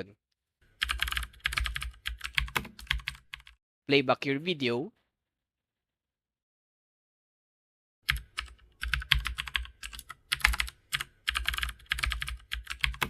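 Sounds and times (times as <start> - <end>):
computer keyboard typing: 0.8 - 3.6, 8.1 - 13.0.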